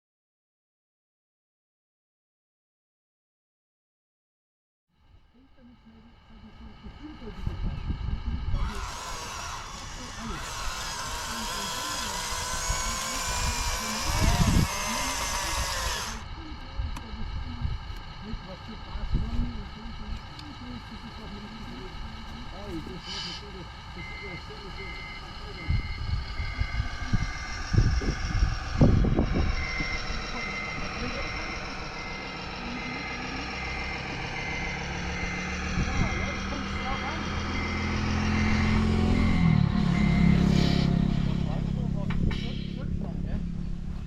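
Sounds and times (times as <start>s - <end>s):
low rumble: 5.1s - 44.0s
model machine motors whining: 5.4s - 44.0s
reversing beeper: 18.3s - 43.4s.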